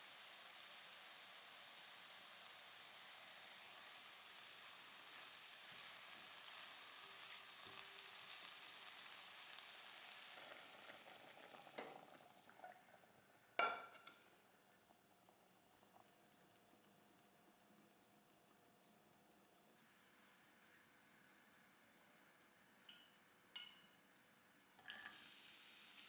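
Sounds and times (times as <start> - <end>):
food sizzling in hot oil: 0.0 - 14.6, 24.8 - 26.0
utensil clanking on pan: 11.7 - 12.1, 13.6 - 14.2.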